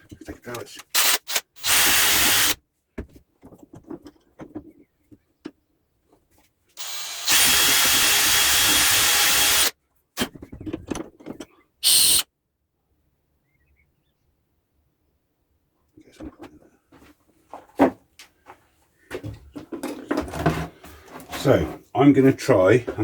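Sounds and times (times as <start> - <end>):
small metal parts clicking: 0.8 - 2.4
pressurised spray hissing: 11.8 - 12.2.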